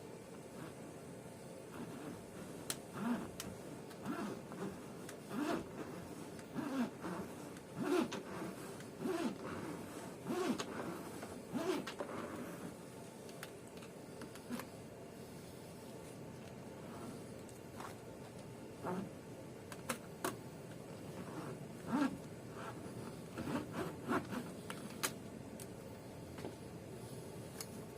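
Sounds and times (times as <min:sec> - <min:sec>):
wire zipping scrape through sealant: 0:02.9 - 0:12.7.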